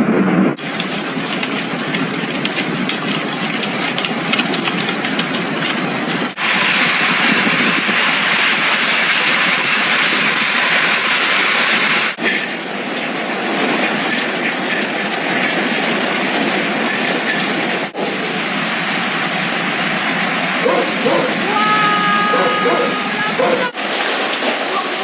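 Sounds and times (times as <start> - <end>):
hail pelting down: 0.6 - 18.0, 23.7 - 25.0.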